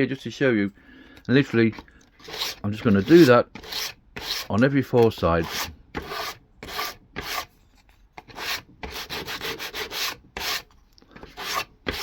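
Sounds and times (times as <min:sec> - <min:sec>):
wood rasping on sandpaper: 0:01.6 - 0:07.5, 0:08.2 - 0:12.0.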